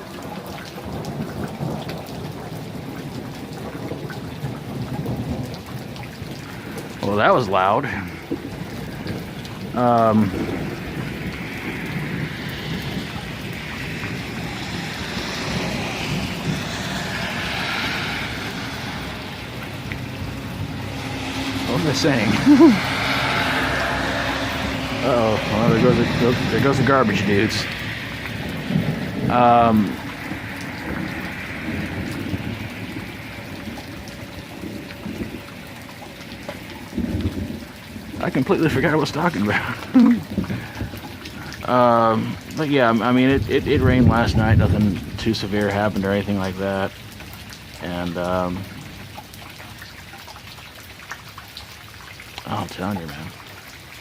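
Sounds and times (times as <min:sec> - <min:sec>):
steady rain: 0:00.0 - 0:54.0
wind: 0:00.0 - 0:54.0
low rumble: 0:08.1 - 0:41.5.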